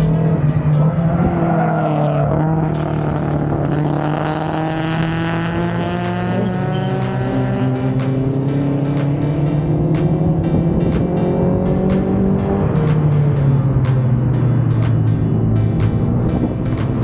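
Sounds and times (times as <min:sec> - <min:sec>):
racing car engines revving: 0:00.0 - 0:13.3
sharp ticks: 0:05.6 - 0:17.0.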